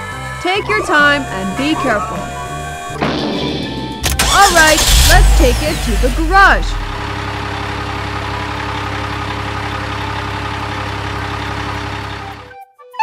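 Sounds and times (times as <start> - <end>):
heavy truck engine running: 0.0 - 12.5.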